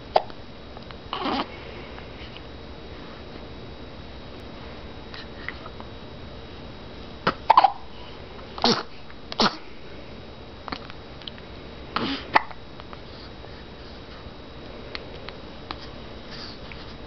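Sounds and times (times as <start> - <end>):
person hiccuping: 1.1 - 1.5, 7.2 - 7.8, 12.0 - 12.6.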